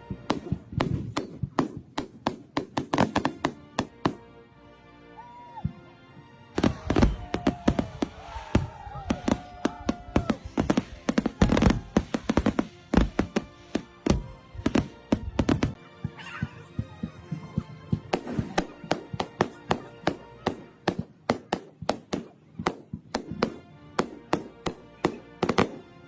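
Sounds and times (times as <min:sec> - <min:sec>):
fireworks bangs and cracks: 0:00.0 - 0:04.2, 0:06.6 - 0:15.8, 0:16.8 - 0:25.9
fireworks whistling: 0:06.6 - 0:15.8.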